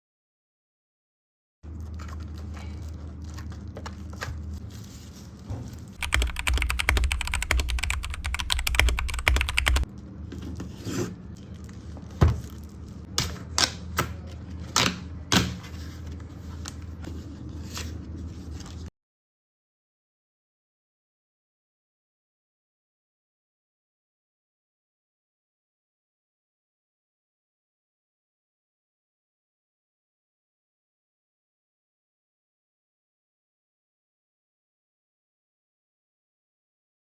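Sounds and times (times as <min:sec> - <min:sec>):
clicking and tapping: 0:06.0 - 0:09.8
steady low hum: 0:06.0 - 0:09.8.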